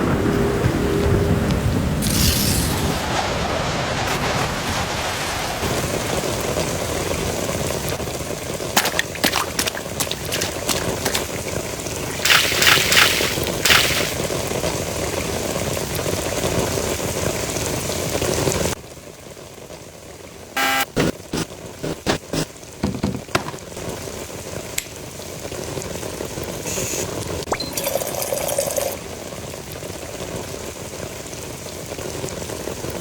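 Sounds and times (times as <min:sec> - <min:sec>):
heavy rain falling: 0:02.8 - 0:18.8
sharp taps and cracks: 0:08.8 - 0:11.4.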